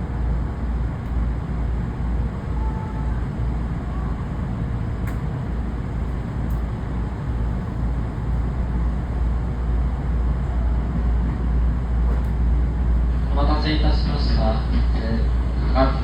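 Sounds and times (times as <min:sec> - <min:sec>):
electric train rumbling: 0:00.0 - 0:16.0
faint clicks: 0:05.0 - 0:05.3.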